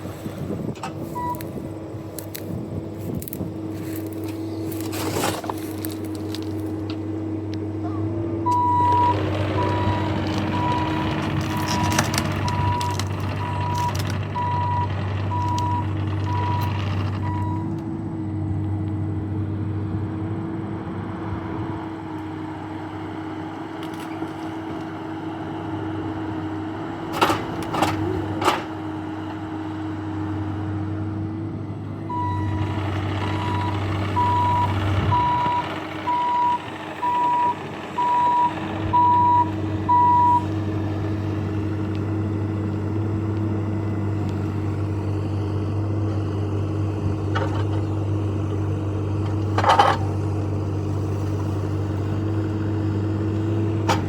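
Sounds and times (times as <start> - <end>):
diesel engine running: 0.0 - 54.0
backup alarm beeping: 1.2 - 1.5, 8.5 - 17.8, 32.1 - 40.4.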